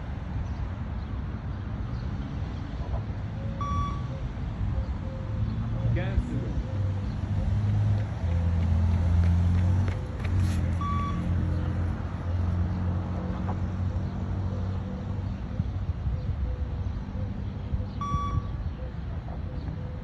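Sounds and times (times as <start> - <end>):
short electronic beeps: 3.6 - 4.1, 10.8 - 11.3, 18.0 - 18.6.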